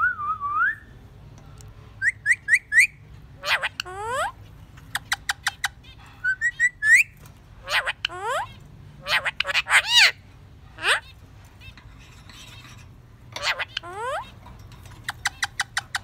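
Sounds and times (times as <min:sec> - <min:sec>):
parrot whistling: 0:05.6 - 0:10.2.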